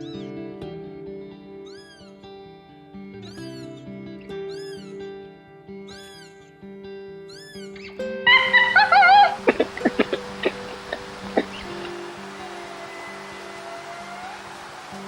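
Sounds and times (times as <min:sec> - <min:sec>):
background music with held notes: 0:00.0 - 0:15.0
kitten meowing: 0:01.6 - 0:02.1, 0:04.6 - 0:04.9, 0:05.9 - 0:06.3, 0:07.3 - 0:11.9.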